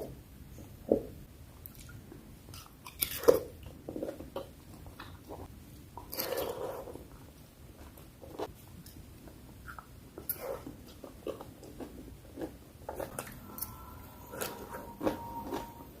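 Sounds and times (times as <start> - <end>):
chewing food: 1.7 - 13.7.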